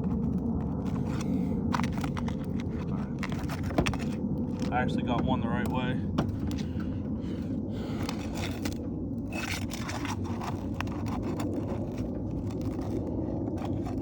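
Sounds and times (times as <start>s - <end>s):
low background rumble: 0.0s - 14.0s
flat bar scraping under shingles: 6.1s - 14.0s.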